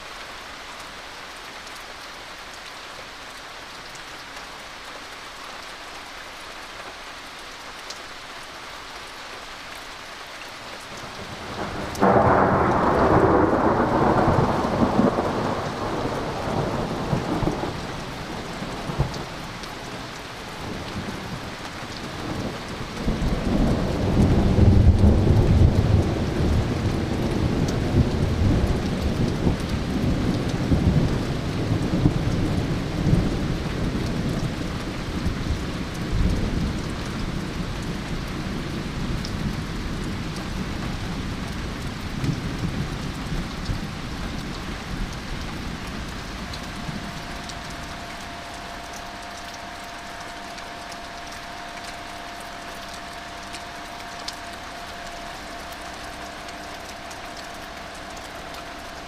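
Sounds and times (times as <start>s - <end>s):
steady rain: 0.0s - 59.0s
thunder rumbling: 11.1s - 19.6s, 41.1s - 50.3s
faint steady hum: 46.0s - 59.0s.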